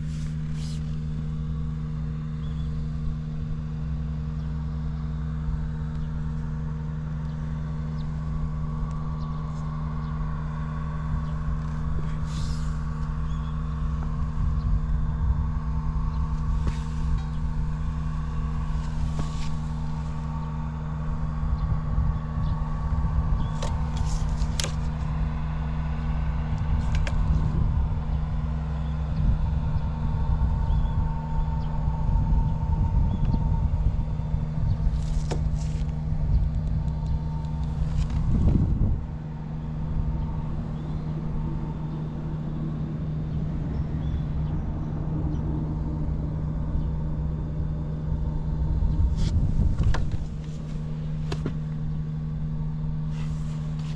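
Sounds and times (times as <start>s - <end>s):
motorbike engine idling: 0.0s - 53.9s.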